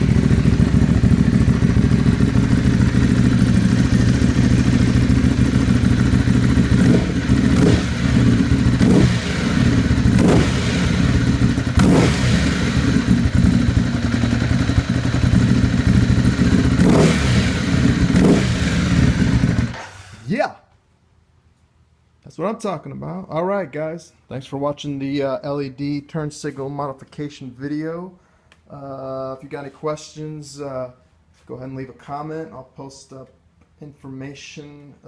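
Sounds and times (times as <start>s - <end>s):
motorcycle engine running: 0.0s - 19.8s.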